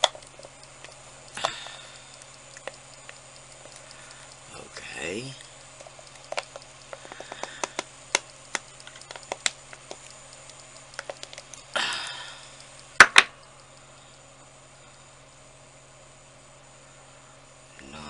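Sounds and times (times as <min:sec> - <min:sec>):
small hard objects clicking: 0:00.0 - 0:13.8
steady low hum: 0:00.0 - 0:18.0.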